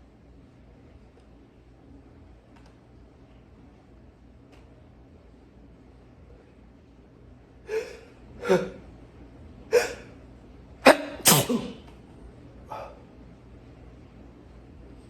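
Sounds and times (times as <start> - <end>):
person sneezing: 7.7 - 8.8, 9.7 - 10.1, 10.8 - 12.0.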